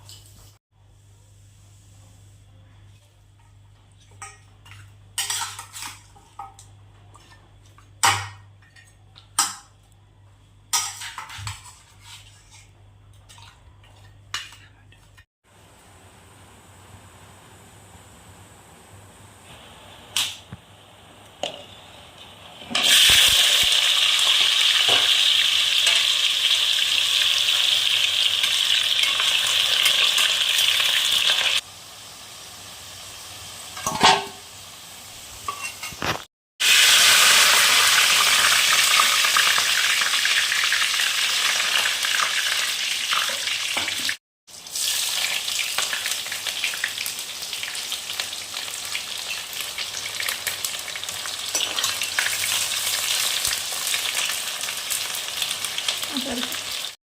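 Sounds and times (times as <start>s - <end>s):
stirring in a pan: 3.0s - 9.1s, 10.7s - 15.3s
food sizzling in hot oil: 19.4s - 57.0s.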